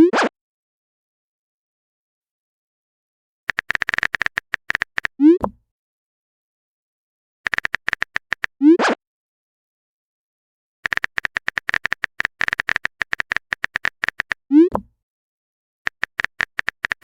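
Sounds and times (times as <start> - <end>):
phone keyboard typing clicks: 3.5 - 5.6, 7.5 - 8.5, 10.8 - 14.4, 15.9 - 17.0.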